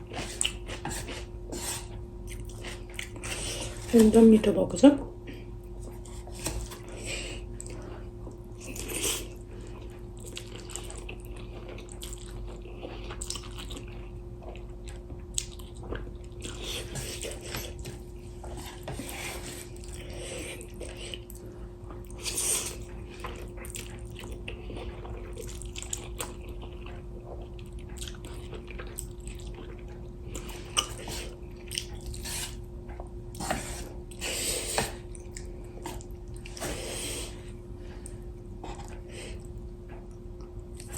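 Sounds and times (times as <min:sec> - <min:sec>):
chewing: 0:00.0 - 0:03.9, 0:05.7 - 0:37.0
faint steady hum: 0:00.0 - 0:40.9.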